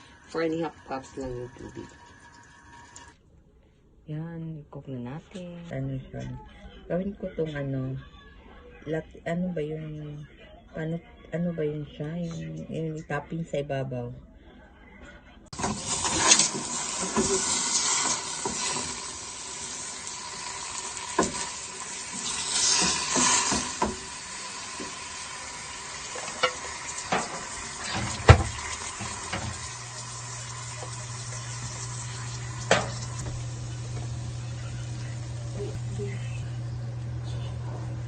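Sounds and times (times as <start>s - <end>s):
coconut milk sizzling in a pan: 0.0s - 3.1s, 15.6s - 36.1s
low steady hum: 29.4s - 38.0s.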